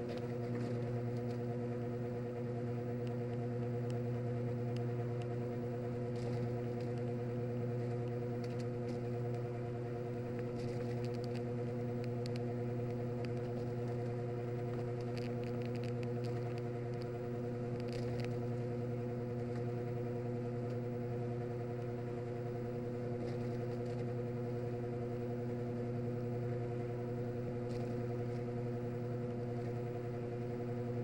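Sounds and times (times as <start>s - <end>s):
drain pump motor hum: 0.0s - 31.0s
faint crackles: 4.7s - 20.9s.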